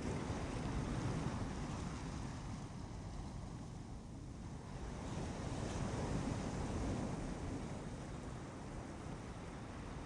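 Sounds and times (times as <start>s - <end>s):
ocean surf washing on beach: 0.0s - 3.6s, 4.6s - 10.0s
wind rumbling on microphone: 0.0s - 10.0s.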